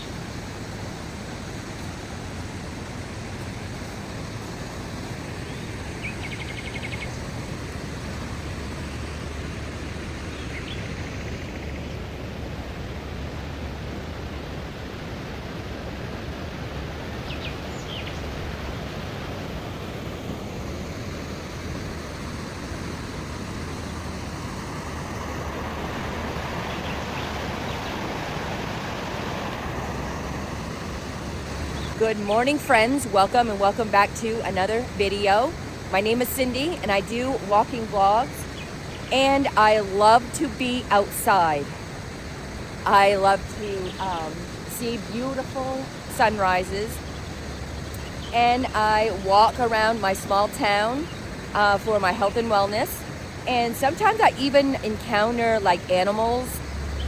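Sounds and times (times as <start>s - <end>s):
faint bird calls: 0.0s - 12.0s, 21.4s - 32.3s
outdoor background noise: 0.0s - 57.0s.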